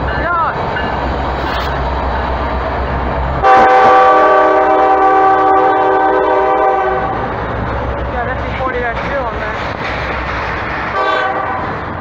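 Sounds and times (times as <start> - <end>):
passing train rumble: 0.0 - 12.0
locomotive air horn chord: 3.4 - 7.2, 11.0 - 11.7.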